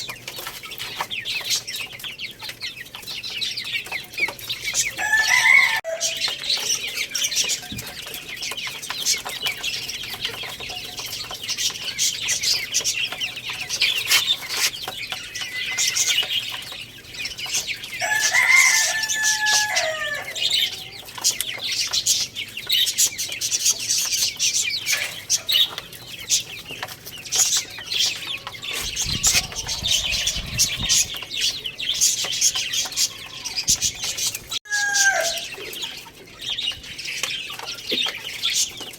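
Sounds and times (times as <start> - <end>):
baby chicks cheeping: 0.0 - 38.9
clicks and scuffles: 13.8 - 15.0
chicken call: 34.6 - 35.6.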